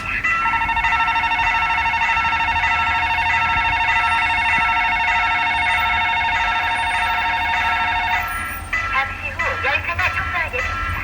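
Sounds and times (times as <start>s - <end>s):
level crossing bell ringing: 0.0s - 11.0s.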